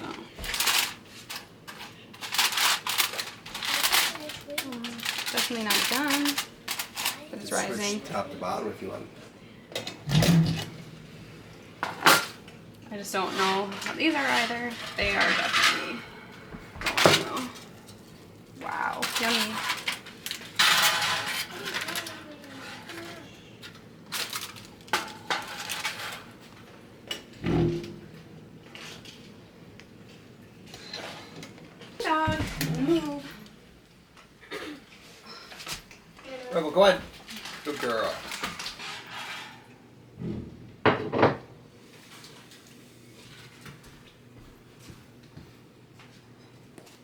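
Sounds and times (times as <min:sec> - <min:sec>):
household items clattering: 0:00.4 - 0:07.6, 0:13.1 - 0:16.1, 0:19.0 - 0:23.2
pans and dishes clinking: 0:13.2 - 0:16.1.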